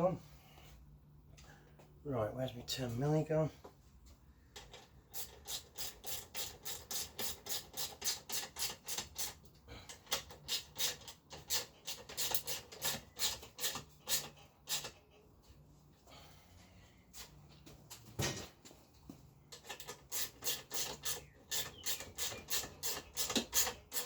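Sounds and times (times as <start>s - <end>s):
ratchet spanner rasping: 4.6s - 15.0s, 19.5s - 24.0s.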